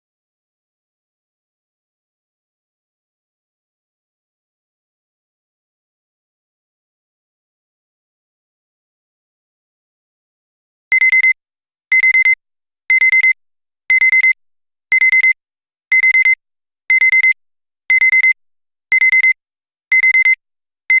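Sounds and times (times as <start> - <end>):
digital timer alarm beeping: 10.9 - 21.0.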